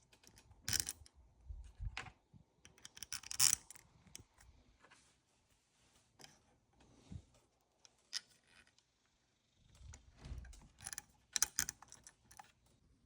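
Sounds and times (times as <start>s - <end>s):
small metal parts clicking: 0.0s - 1.1s, 2.7s - 3.8s, 10.8s - 12.6s
soft low handling noise: 0.0s - 2.8s, 3.8s - 13.0s.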